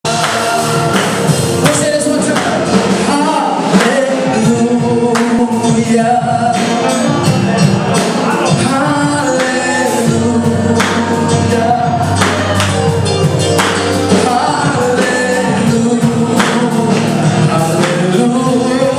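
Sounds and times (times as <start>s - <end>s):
choir singing: 0.1s - 1.7s
percussion hits: 0.1s - 18.9s.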